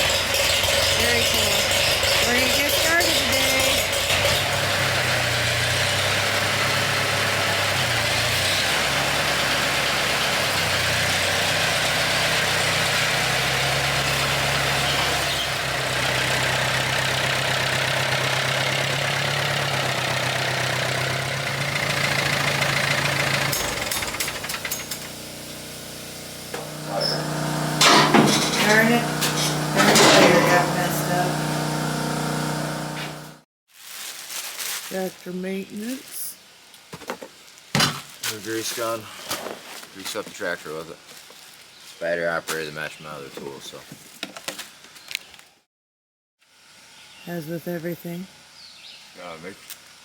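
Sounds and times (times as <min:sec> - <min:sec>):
tractor engine running: 0:00.0 - 0:33.4.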